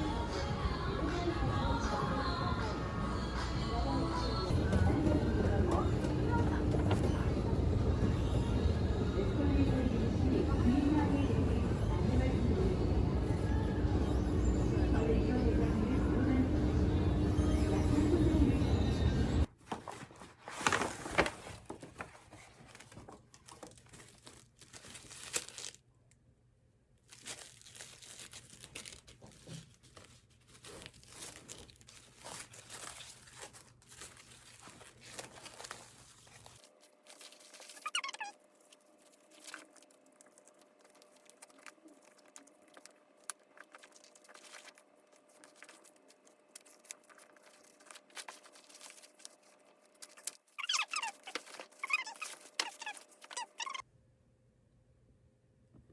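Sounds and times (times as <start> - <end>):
crinkling handling noise: 4.5 - 8.5, 19.4 - 26.2, 26.9 - 53.8.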